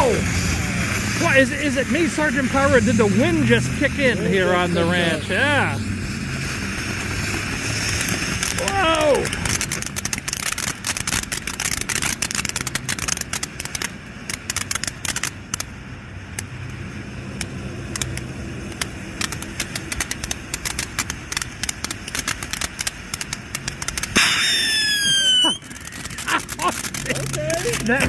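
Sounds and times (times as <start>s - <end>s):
firework hissing and crackling: 0.0s - 28.0s
firework whistle sliding down: 24.2s - 25.8s.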